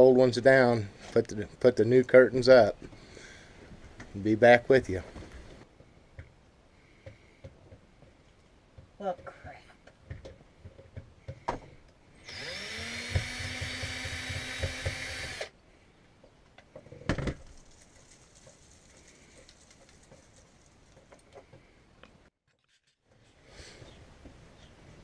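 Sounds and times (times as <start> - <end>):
power drill running: 12.2 - 15.5
faint handling sounds: 16.1 - 24.5.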